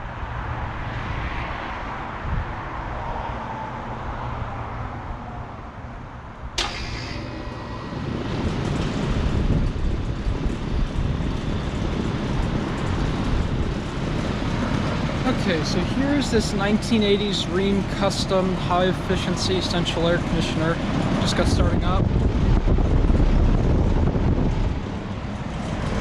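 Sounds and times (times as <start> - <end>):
air conditioner running: 6.6 - 26.0.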